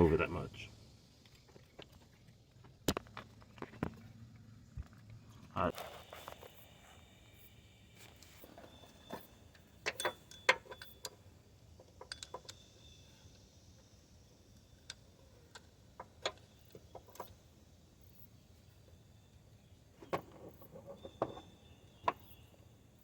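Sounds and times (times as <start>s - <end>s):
metallic clicks of hand tools: 11.9s - 12.6s.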